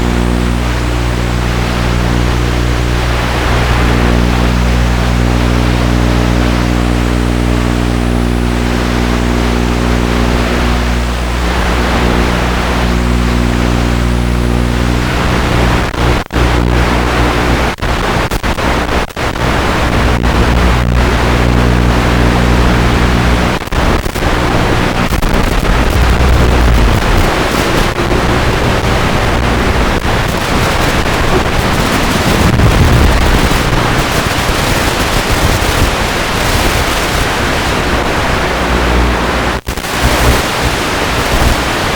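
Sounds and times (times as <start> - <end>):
drone motors buzzing: 19.4 - 23.5, 24.3 - 35.3
rushing air: 25.1 - 36.9.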